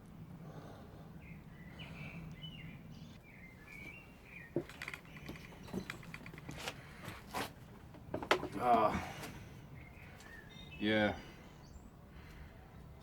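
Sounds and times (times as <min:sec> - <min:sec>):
bird chirping: 0:01.2 - 0:06.6, 0:09.6 - 0:13.0.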